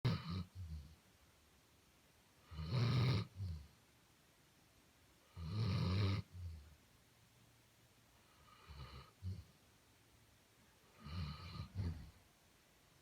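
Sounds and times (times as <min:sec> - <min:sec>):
dog snoring: 0:00.1 - 0:01.0, 0:02.4 - 0:03.8, 0:05.3 - 0:06.7, 0:08.2 - 0:09.6, 0:11.0 - 0:12.2.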